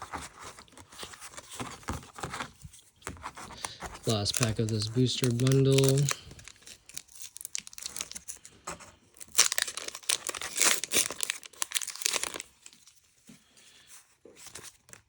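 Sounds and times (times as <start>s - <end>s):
foil wrapper tearing and crinkling: 3.6s - 13.0s.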